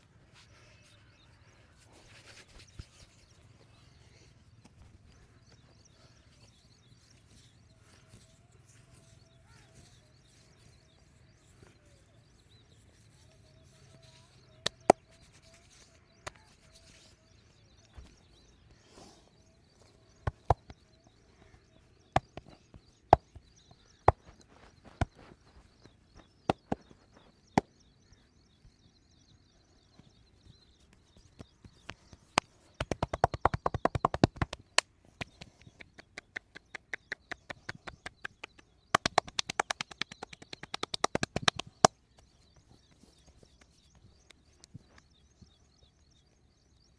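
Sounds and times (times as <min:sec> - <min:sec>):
fast chopping massage strikes: 0:32.8 - 0:34.8, 0:39.0 - 0:41.8.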